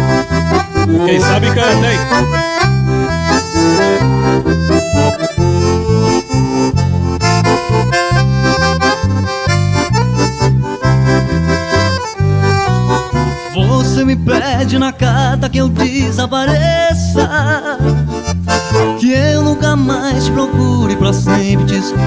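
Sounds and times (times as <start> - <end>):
pulsing bass beat: 0.0 - 21.9
live band playing: 0.1 - 13.6.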